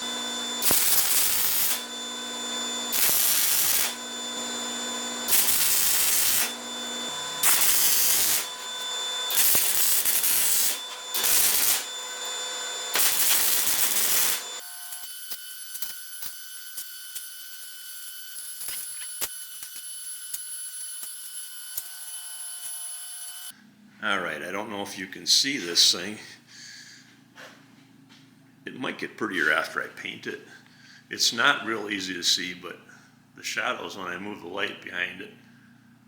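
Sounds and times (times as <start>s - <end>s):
arc welding bursts: 0.0s - 23.5s
welding machine hum: 0.0s - 23.5s.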